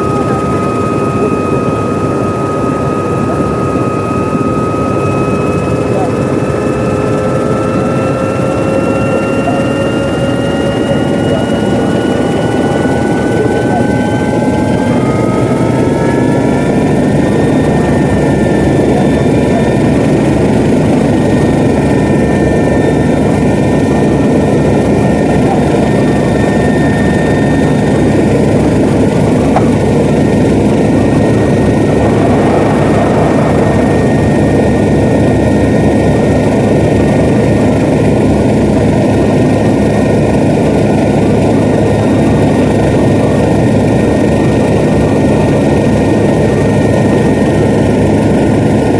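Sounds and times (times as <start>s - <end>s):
helicopter rotor and engine noise: 0.0s - 48.9s
thin high whine: 27.2s - 37.1s.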